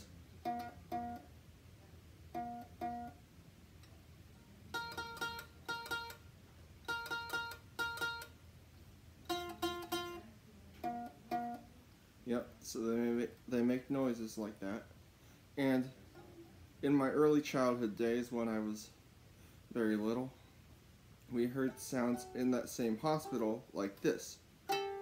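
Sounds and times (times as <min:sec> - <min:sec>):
ukulele plucked notes: 0:00.0 - 0:01.3, 0:02.3 - 0:03.2, 0:04.7 - 0:06.2, 0:06.8 - 0:08.4, 0:09.2 - 0:11.7, 0:21.4 - 0:23.6, 0:24.7 - 0:25.0.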